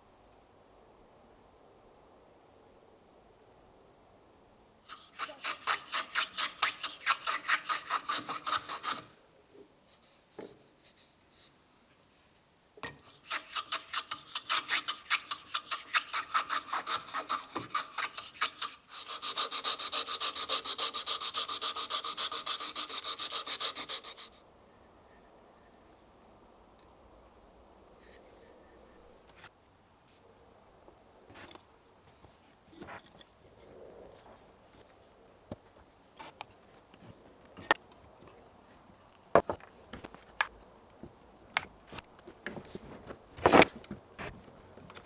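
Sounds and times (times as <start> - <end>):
wood rubbed by hand: 13.2 - 24.4.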